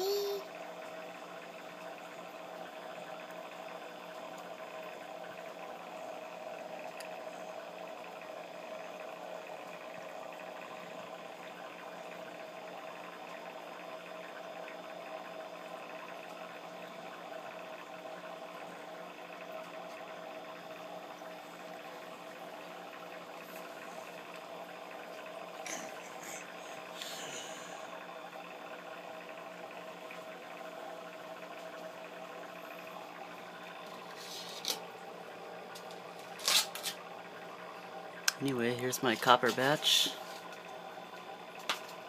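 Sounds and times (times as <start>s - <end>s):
aquarium pump humming: 0.0s - 42.0s
bubbling trickling water: 0.2s - 36.4s, 37.0s - 42.0s.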